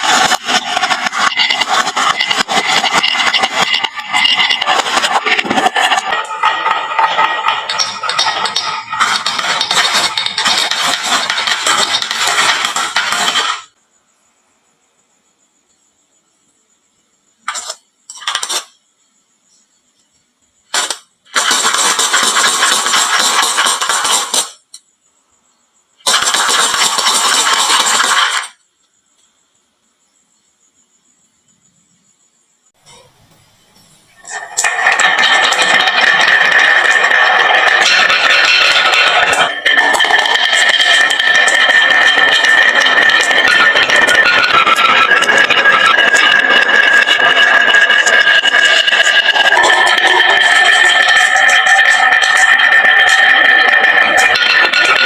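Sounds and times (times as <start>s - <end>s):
marbles clattering down wooden run: 0.0s - 13.7s, 20.9s - 24.6s, 26.1s - 28.6s, 34.2s - 55.0s.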